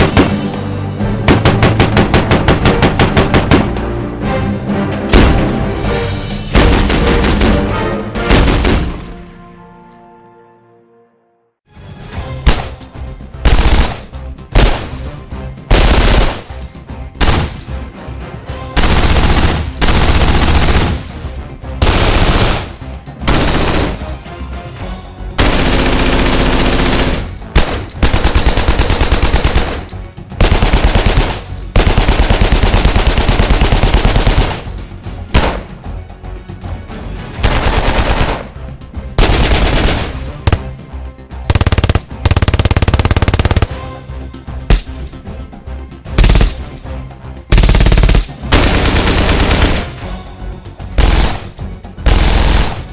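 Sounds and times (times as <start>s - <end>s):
machine gun firing bursts: 1.3s - 3.7s, 13.4s - 15.0s, 15.7s - 16.6s, 17.2s - 17.6s, 18.8s - 21.1s, 21.8s - 24.1s, 25.4s - 35.7s, 37.4s - 38.5s, 39.2s - 40.8s, 41.5s - 44.0s, 46.2s - 46.8s, 47.5s - 50.1s, 51.0s - 52.9s.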